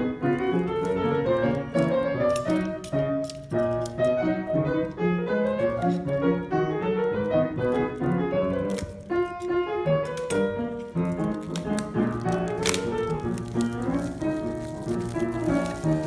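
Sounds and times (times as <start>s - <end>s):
piano melody over chords: 0.0s - 16.0s.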